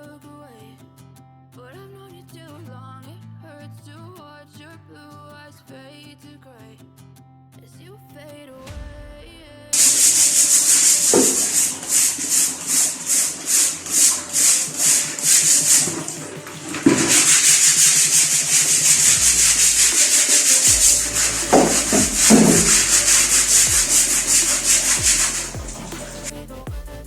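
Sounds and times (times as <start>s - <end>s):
stiff brush scrubbing: 9.8s - 26.4s.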